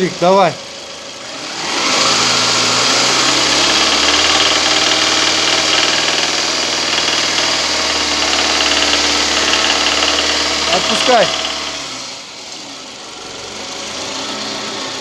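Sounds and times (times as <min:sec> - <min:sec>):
car engine revving: 0:00.8 - 0:12.2
engine knock: 0:01.9 - 0:12.0.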